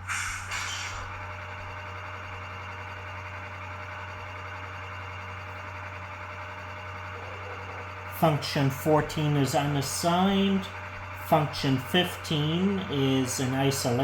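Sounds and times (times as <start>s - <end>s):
air hiss burst: 0.0s - 1.1s.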